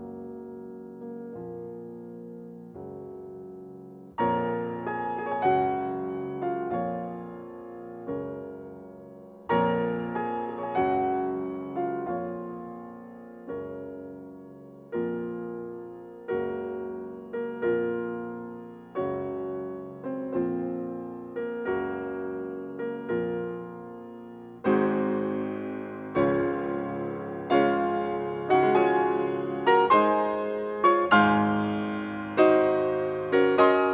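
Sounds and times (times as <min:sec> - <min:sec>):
slow piano chords: 0:00.0 - 0:33.9.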